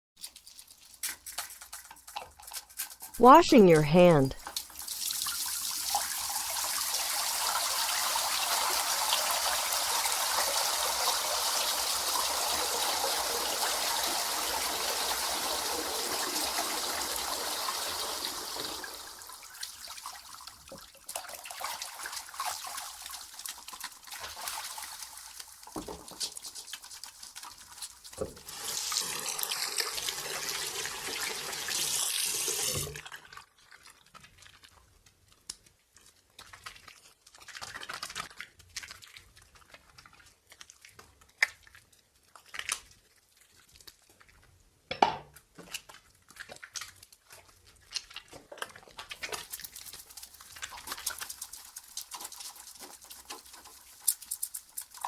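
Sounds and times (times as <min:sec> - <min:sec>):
water tap running: 0:28.4 - 0:33.0.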